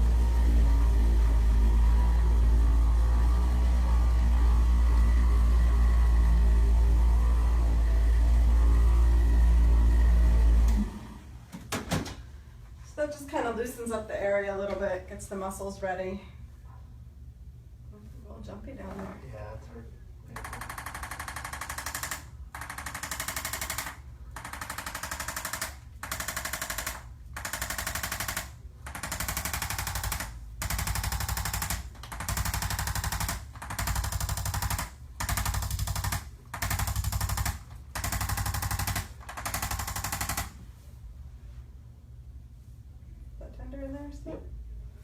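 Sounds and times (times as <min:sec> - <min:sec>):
electric percussion massager pulses: 0:00.0 - 0:11.3, 0:20.3 - 0:40.6.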